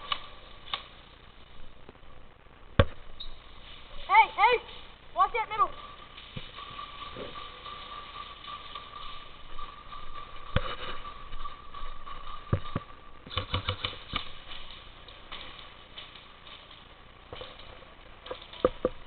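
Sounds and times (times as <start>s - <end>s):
faint high hum: 0.0s - 19.0s
airsoft guns firing: 12.5s - 16.3s.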